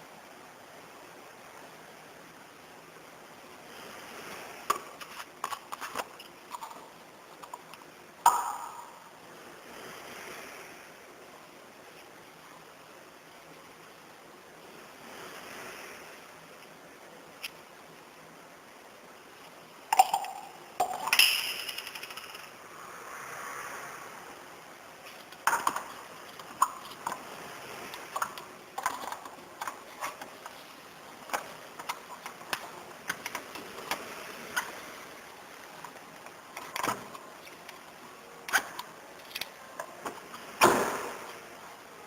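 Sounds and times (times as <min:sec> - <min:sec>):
small parts clicking and tapping: 0:04.7 - 0:09.0, 0:19.9 - 0:22.6, 0:25.0 - 0:34.8.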